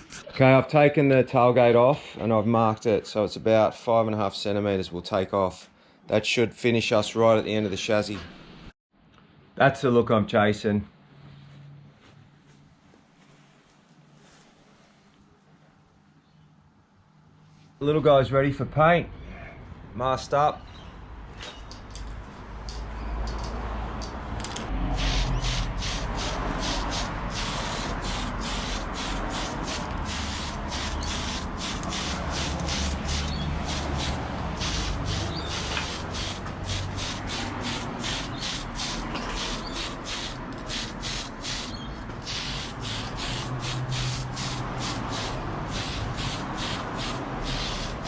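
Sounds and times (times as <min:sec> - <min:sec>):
spray-paint can hissing: 0:24.9 - 0:48.0.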